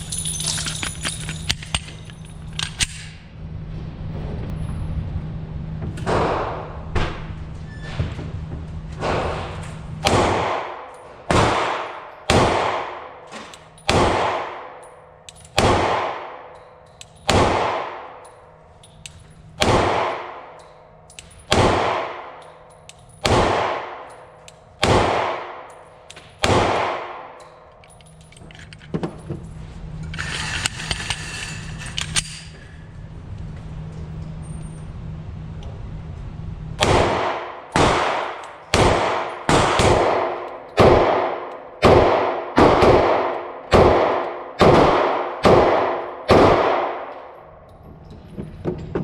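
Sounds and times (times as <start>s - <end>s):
pistol shots with echo: 10.0s - 14.8s, 15.5s - 16.6s, 17.2s - 18.3s, 19.6s - 20.6s, 21.4s - 22.6s, 23.2s - 24.2s, 24.8s - 25.8s, 26.4s - 27.4s, 36.8s - 47.4s.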